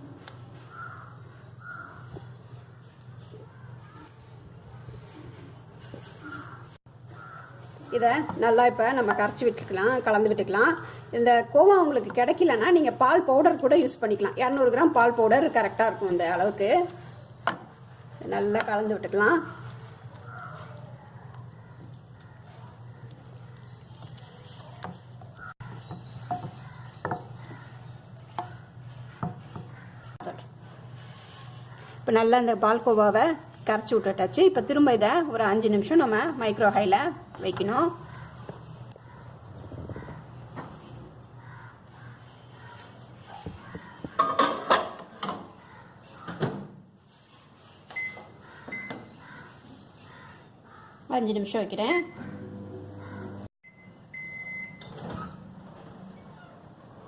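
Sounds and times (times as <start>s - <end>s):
spoon stirring and mashing: 0.2s - 10.9s, 11.6s - 34.7s
microwave keypad beeps: 48.0s - 49.1s, 53.6s - 54.9s.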